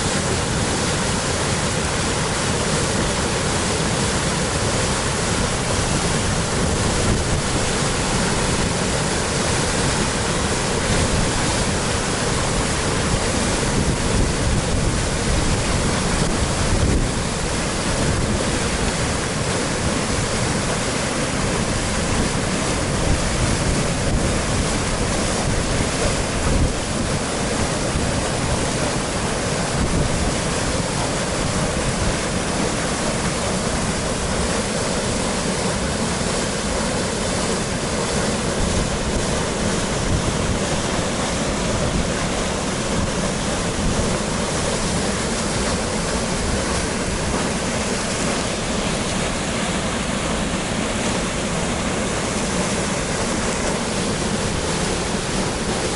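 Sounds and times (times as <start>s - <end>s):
waterfall rushing: 0.0s - 55.9s
wind buffeting microphone: 12.5s - 20.4s, 22.0s - 32.6s, 38.4s - 47.4s.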